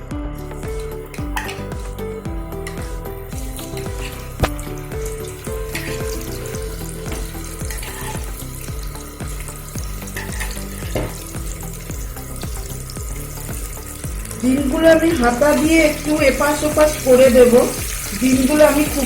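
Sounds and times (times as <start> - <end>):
eggs sizzling in hot oil: 0.0 - 19.0
soft background music: 0.0 - 19.0.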